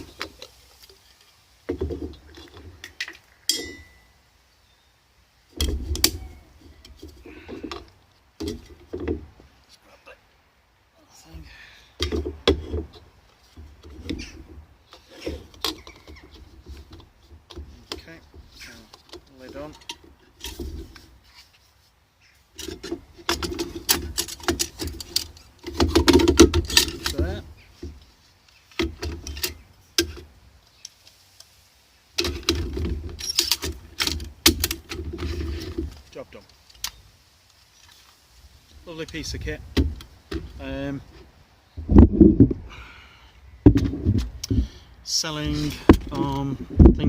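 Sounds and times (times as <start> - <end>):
metal rubbing and scraping: 12.6 - 21.9, 32.2 - 36.1
metal parts clicking and rattling: 22.6 - 27.4, 32.2 - 36.0.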